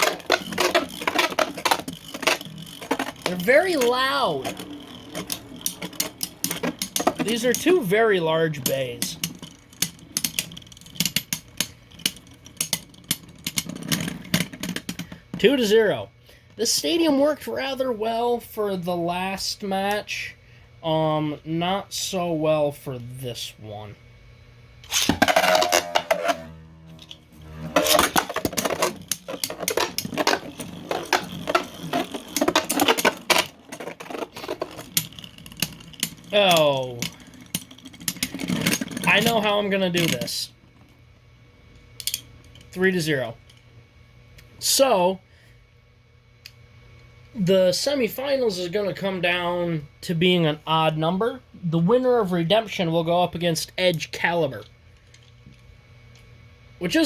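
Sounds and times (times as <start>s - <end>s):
plastic tops clacking: 0.0s - 7.9s, 24.9s - 26.4s, 27.0s - 40.3s
spinning tops whirring: 0.0s - 15.7s, 24.8s - 41.0s.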